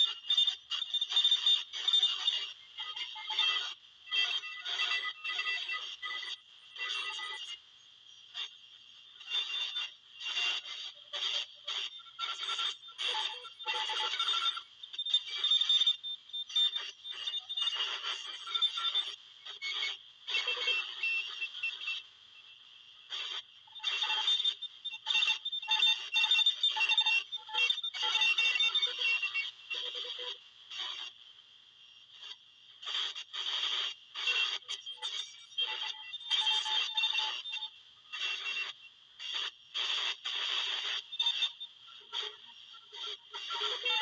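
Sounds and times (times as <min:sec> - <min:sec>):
buzzing radio signal noise: 0:29.5 - 0:44.0
steady radio tones: 0:38.7 - 0:43.4.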